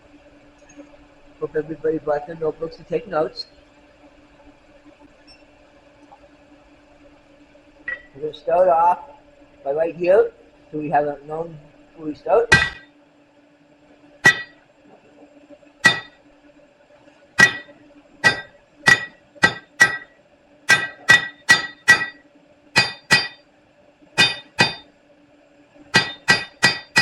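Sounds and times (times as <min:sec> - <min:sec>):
faint steady hum: 0:00.0 - 0:27.0
hammer ringing on anvil: 0:12.5 - 0:12.8, 0:14.3 - 0:14.5, 0:15.8 - 0:16.2, 0:17.4 - 0:20.1, 0:20.7 - 0:22.2, 0:22.8 - 0:23.4, 0:24.2 - 0:24.8, 0:26.0 - 0:27.0.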